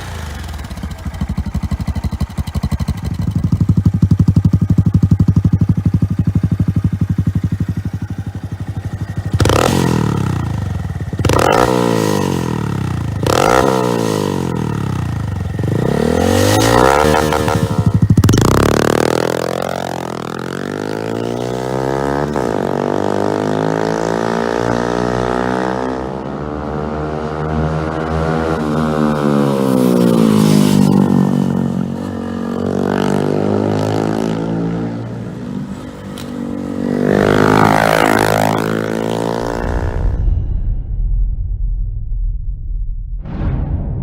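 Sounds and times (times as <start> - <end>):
motorcycle engine revving: 0.0 - 40.2
low rumble: 39.2 - 44.0.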